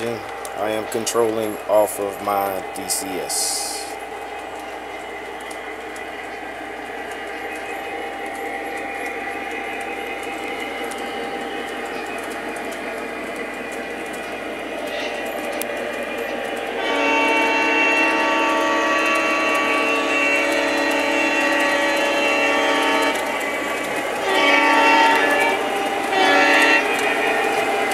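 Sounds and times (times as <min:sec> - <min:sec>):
model train running sound: 0:00.0 - 0:27.9
train horn blast: 0:16.8 - 0:23.4, 0:24.2 - 0:27.4.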